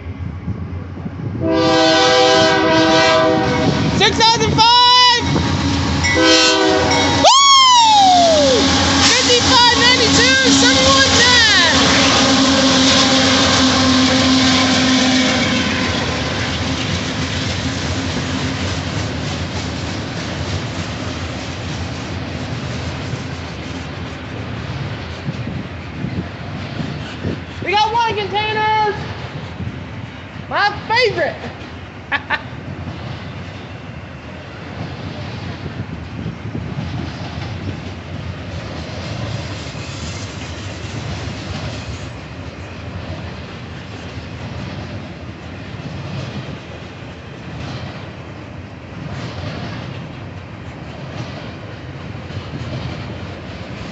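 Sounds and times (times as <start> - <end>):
freight cars rumbling on rails: 0.0 - 53.9
locomotive droning tone: 5.2 - 18.8.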